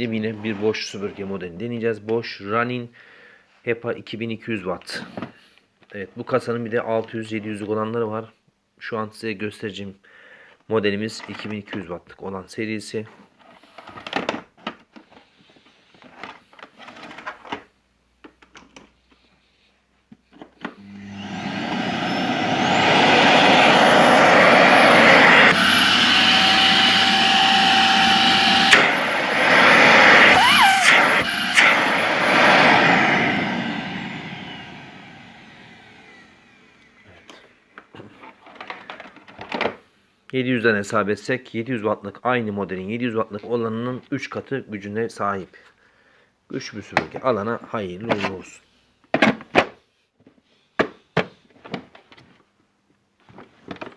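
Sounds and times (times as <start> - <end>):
vacuum cleaner motor: 20.8 - 37.6
high whistle: 21.8 - 34.5.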